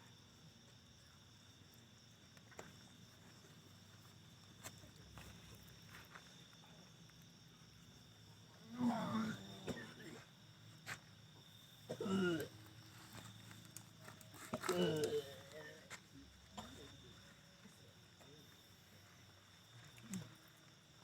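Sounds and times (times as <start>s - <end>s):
loud growl: 8.6s - 9.9s.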